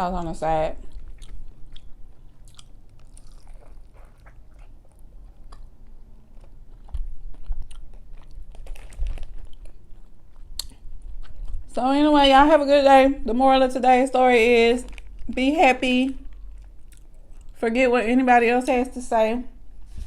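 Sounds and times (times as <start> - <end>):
person chewing and biting: 0.8 - 11.7, 16.3 - 17.6
small clicks and crunches: 6.4 - 9.8.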